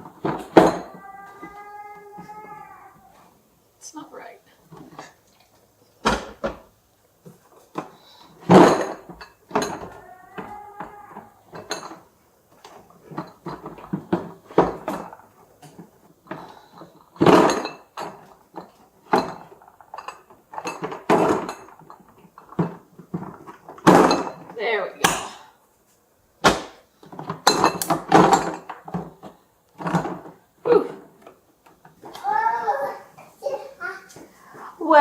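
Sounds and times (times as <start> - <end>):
hard objects clattering: 0.0 - 3.1, 7.3 - 25.4, 26.4 - 32.2.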